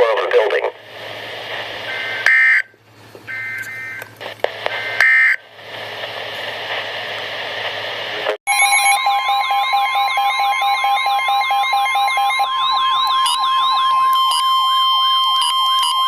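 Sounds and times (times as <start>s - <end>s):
radio hiss with low hum: 0.0s - 8.4s
warbling electronic alert siren: 3.3s - 4.0s, 8.5s - 16.0s.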